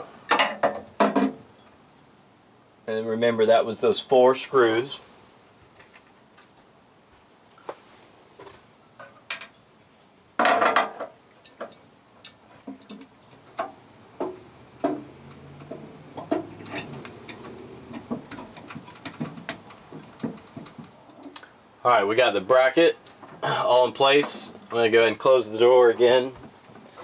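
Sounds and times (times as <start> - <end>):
metal rattle: 12.7 - 21.4.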